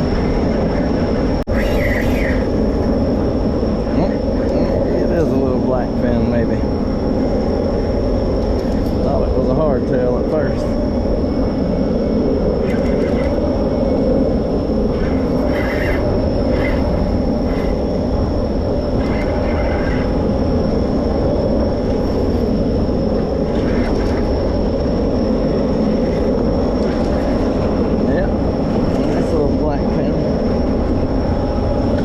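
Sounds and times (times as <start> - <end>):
boat engines droning: 0.0 - 32.0
high whine: 0.0 - 32.0.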